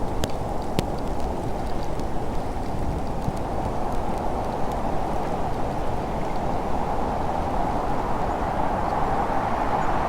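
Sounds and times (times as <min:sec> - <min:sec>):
faint light ticks: 0:00.0 - 0:05.6
blizzard wind blowing: 0:00.0 - 0:10.0.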